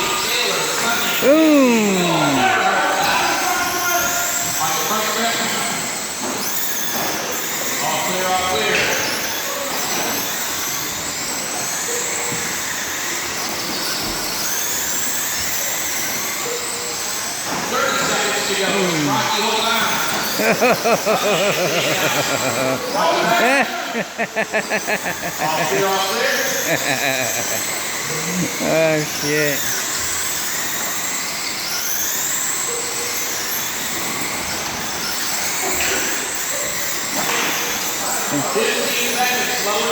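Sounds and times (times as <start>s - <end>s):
rc car motors whining: 0.0s - 39.9s
steady dense noise: 20.4s - 29.8s.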